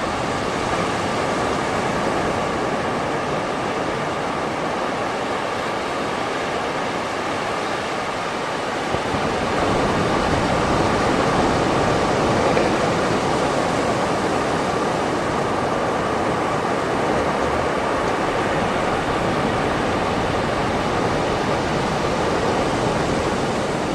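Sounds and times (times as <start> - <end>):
surf washing on shore: 0.0 - 23.9.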